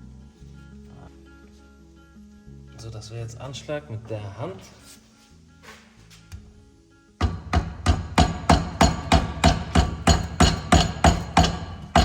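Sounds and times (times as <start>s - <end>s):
hammer knocks on metal: 7.2s - 12.0s.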